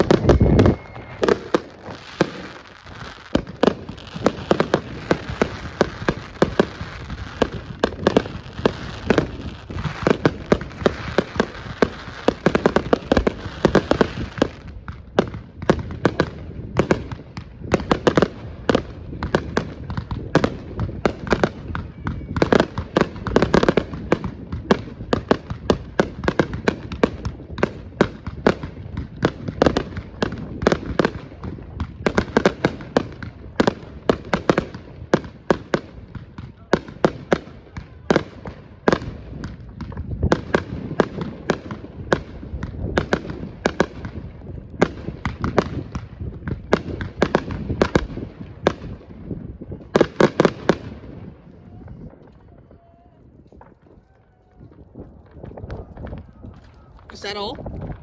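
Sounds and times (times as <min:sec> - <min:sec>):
fireworks bangs and crackles: 0:00.0 - 0:58.0.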